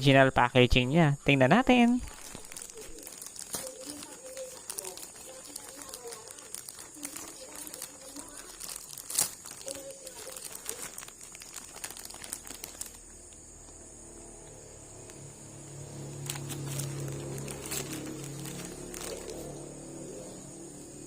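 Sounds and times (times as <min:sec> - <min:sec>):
plastic and cardboard crinkling: 0:01.7 - 0:13.4, 0:16.0 - 0:20.2.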